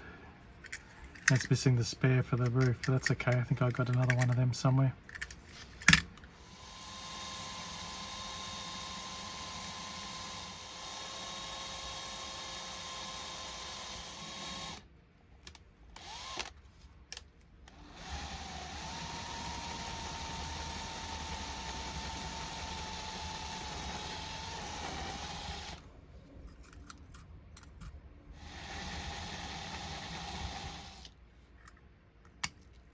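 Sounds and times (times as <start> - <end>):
power drill whining: 6.4 - 14.8, 16.0 - 16.5, 17.7 - 25.9, 28.4 - 31.2.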